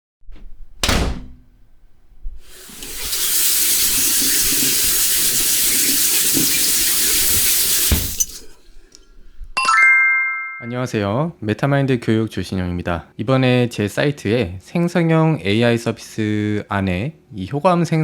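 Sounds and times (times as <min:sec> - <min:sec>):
water running from a tap: 0:02.4 - 0:08.6
bright chime-like tone: 0:09.6 - 0:10.8.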